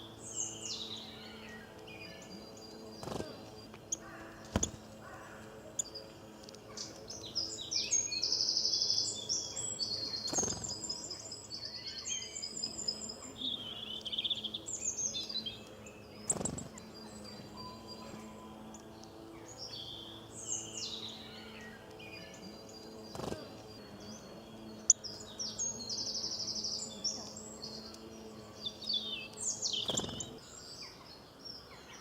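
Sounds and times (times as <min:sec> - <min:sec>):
faint low hum: 0:00.0 - 0:32.0
songbirds chirping: 0:00.0 - 0:32.0
rapid high bird trill: 0:28.6 - 0:30.4.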